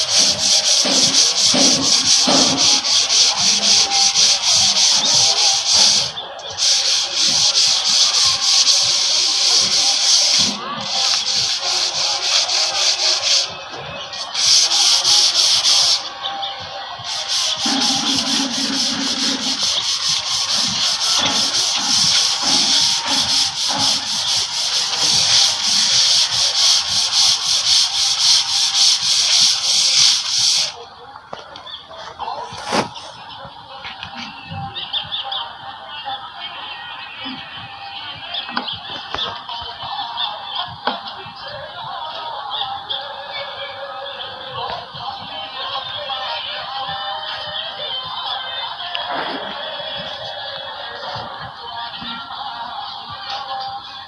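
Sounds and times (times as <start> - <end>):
sandpaper rubbing on wall: 0.0 - 13.5, 14.2 - 16.0, 17.0 - 30.8, 32.5 - 33.1.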